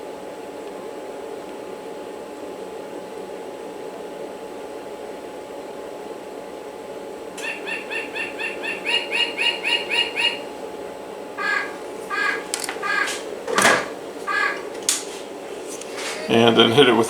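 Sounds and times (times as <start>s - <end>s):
low background hum: 0.0s - 17.0s
bird chirping rapidly: 7.4s - 10.6s, 11.4s - 15.2s.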